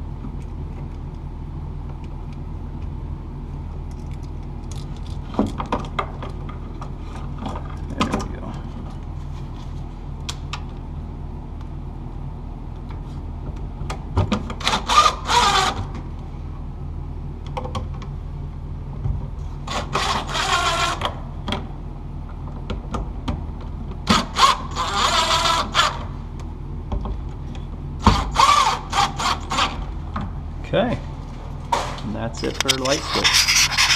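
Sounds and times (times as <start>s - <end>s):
steady low hum: 0.0s - 33.9s
power drill running: 14.6s - 15.9s, 19.7s - 21.0s, 24.1s - 26.0s, 28.1s - 29.8s.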